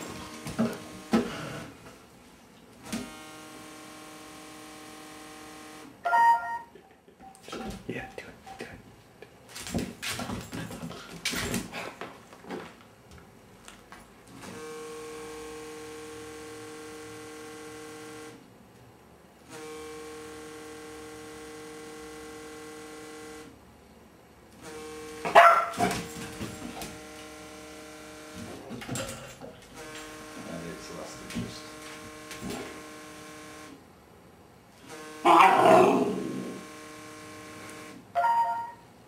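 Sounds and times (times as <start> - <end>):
puppy barking: 25.3 - 26.0, 35.3 - 36.2.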